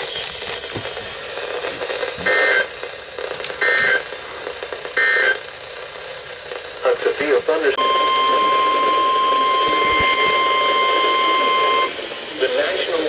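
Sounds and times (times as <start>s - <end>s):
radio hiss: 0.7s - 13.0s
buzzy two-tone digital data blasts: 2.2s - 2.7s, 5.0s - 5.5s.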